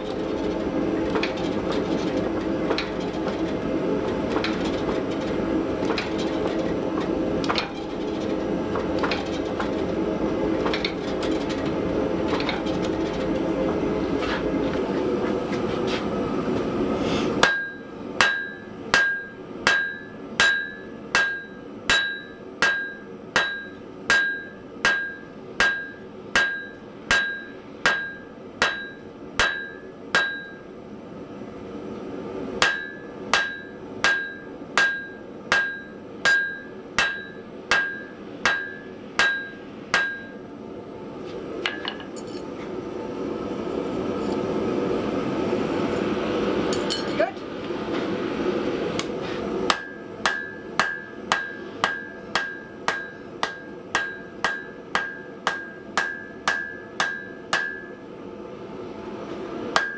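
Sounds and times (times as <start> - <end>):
hammer striking steel on anvil: 0.0 - 14.4, 17.4 - 30.7, 32.6 - 40.4, 46.7 - 47.3, 49.7 - 58.0
droning machine: 0.0 - 59.9.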